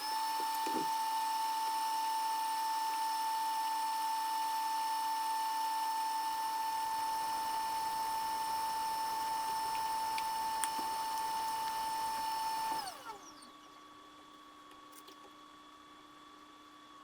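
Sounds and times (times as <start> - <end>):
small electric motor whining: 0.0 - 13.7.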